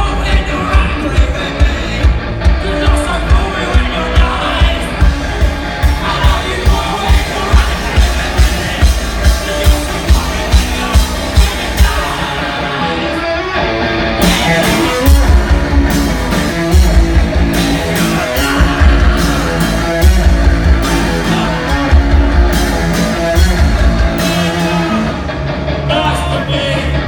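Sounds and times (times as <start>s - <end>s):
punk rock band playing: 0.0s - 27.0s
drum hits: 14.2s - 24.9s.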